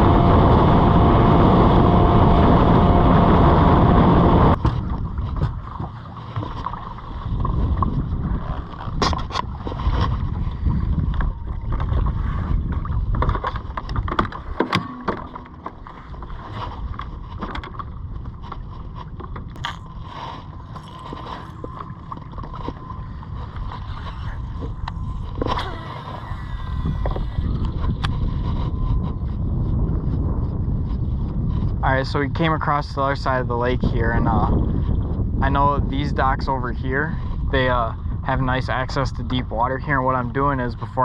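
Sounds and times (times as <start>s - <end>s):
boat motor running: 0.0s - 30.7s
water rumbling against hull: 0.0s - 41.0s.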